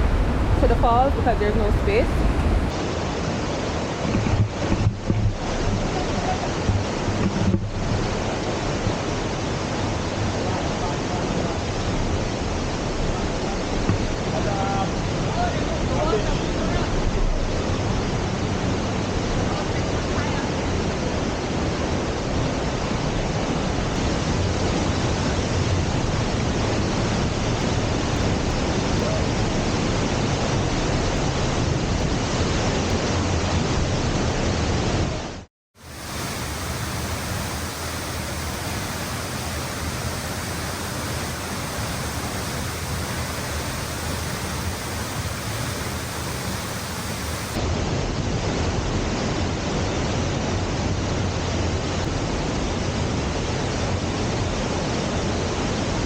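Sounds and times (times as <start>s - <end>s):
waterfall roaring: 0.0s - 4.1s, 35.8s - 47.8s.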